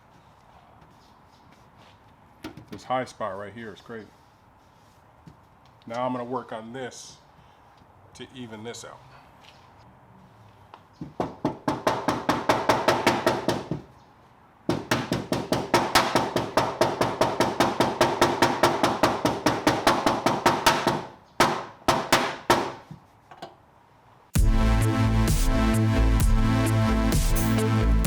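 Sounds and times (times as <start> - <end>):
hammer tapping on sheet metal: 11.2 - 13.8, 14.7 - 22.8.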